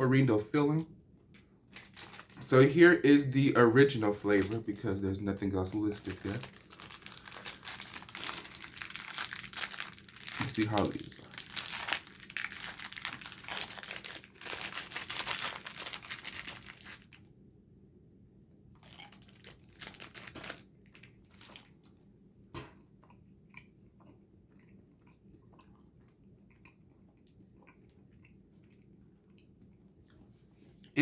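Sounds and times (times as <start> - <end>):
candy packet crinkling and tearing: 1.7 - 17.2, 18.8 - 22.0
quiet chewing: 21.0 - 31.0.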